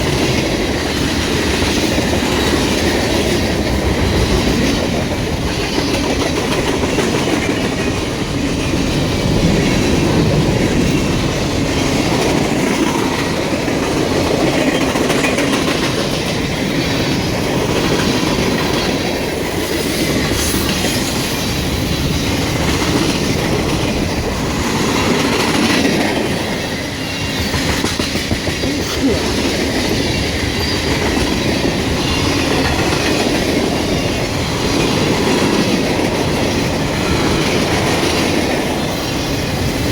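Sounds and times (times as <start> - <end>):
freight train rumbling past: 0.0 - 39.9.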